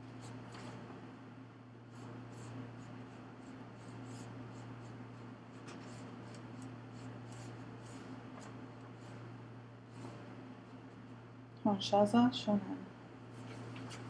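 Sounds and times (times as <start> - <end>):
soft scratching and rustling: 0.0 - 1.0, 1.9 - 10.8, 13.3 - 14.0
low electrical hum: 0.0 - 14.0.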